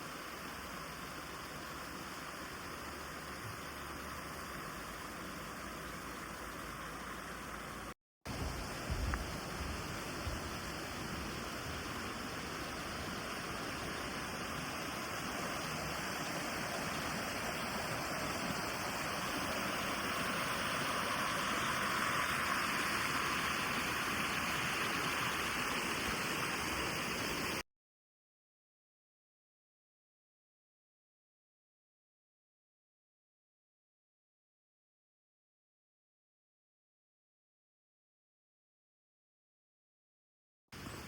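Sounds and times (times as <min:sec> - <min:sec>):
stream rushing over rocks: 0:00.1 - 0:27.6.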